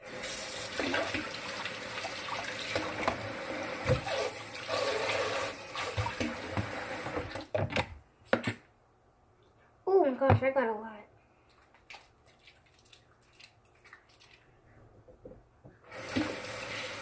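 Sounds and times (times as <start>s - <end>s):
tap water running into sink: 0.1s - 7.4s, 15.9s - 17.0s.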